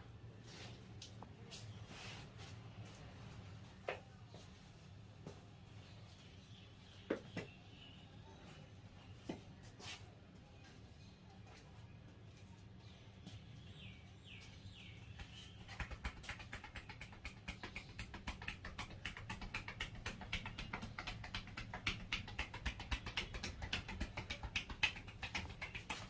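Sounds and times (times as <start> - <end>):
hands tapping on head: 15.2 - 26.0.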